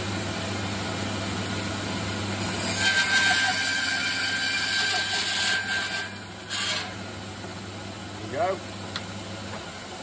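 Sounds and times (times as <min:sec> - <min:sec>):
bandsaw motor humming: 0:00.0 - 0:10.0
saw blade cutting wood: 0:02.4 - 0:07.1.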